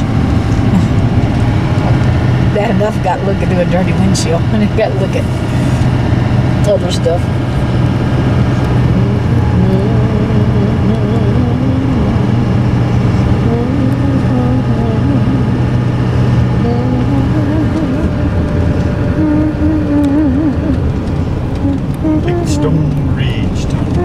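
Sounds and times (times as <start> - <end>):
vehicle engine and road drone: 0.0 - 24.0
wavering voice-like tone: 0.5 - 1.1, 21.6 - 24.0.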